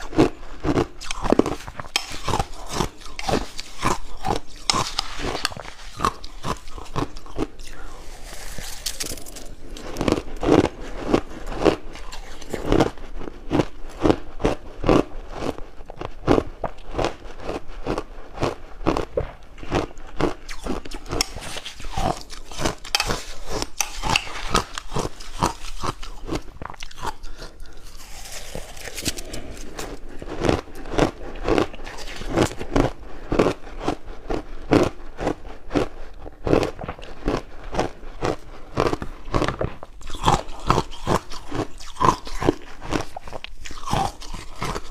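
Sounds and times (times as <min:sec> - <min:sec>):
ice being crunched: 0:01.0 - 0:12.7, 0:20.5 - 0:30.7.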